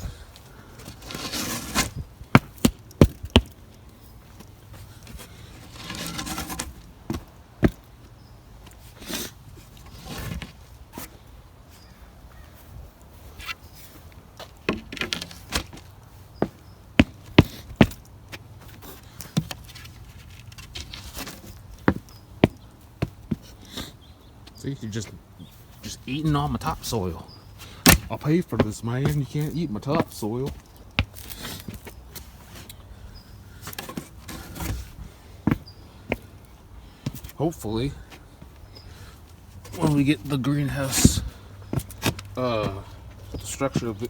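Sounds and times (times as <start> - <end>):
hand tool scraping soil: 0.8 - 2.1, 5.0 - 7.2, 9.0 - 11.1, 33.6 - 35.1.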